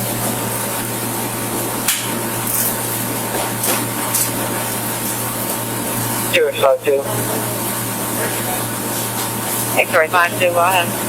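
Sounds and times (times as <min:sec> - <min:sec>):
car cabin hiss and hum: 0:06.3 - 0:07.4.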